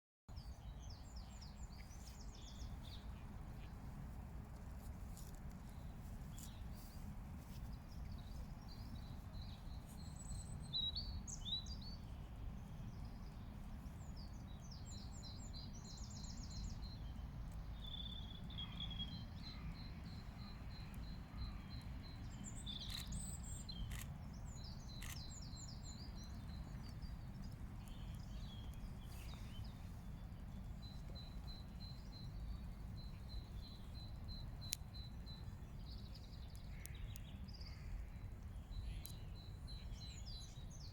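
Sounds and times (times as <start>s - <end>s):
small birds chirping: 0.3s - 40.9s.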